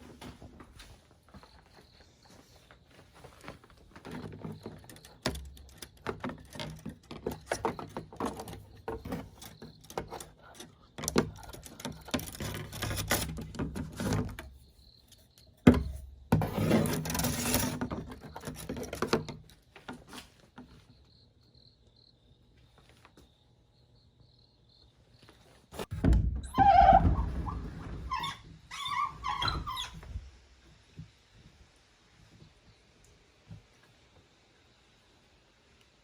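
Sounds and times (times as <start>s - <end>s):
rustling handling noises: 0.0s - 14.6s
faint high chirping insects: 0.6s - 25.9s, 32.3s - 36.0s.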